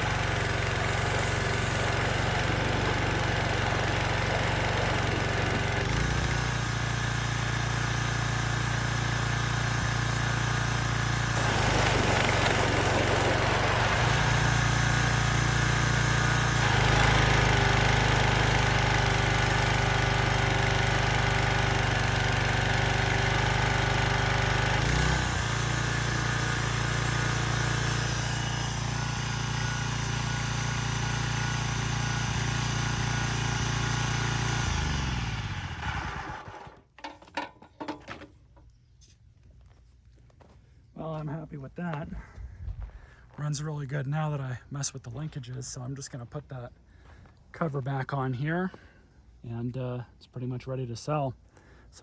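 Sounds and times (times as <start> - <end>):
pressure washer engine running: 0.0 - 36.6.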